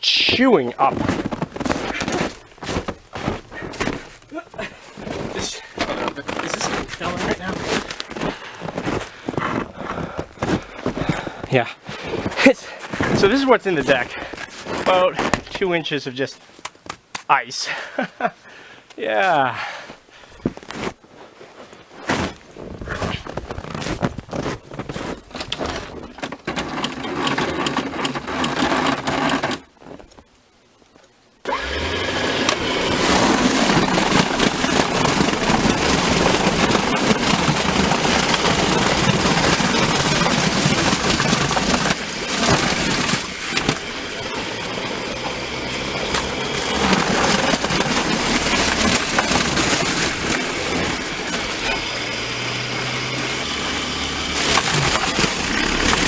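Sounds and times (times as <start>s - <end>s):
scraping and knocking on ice: 0.3s - 15.8s, 31.8s - 56.0s
electric snow blower running: 6.0s - 9.6s, 25.0s - 29.6s, 31.5s - 56.0s.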